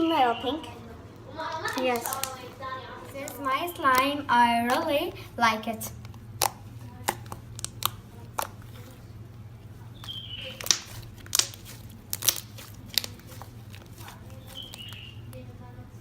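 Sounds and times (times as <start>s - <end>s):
slime popping and clicking: 1.7s - 2.5s, 6.0s - 8.9s, 10.0s - 15.2s.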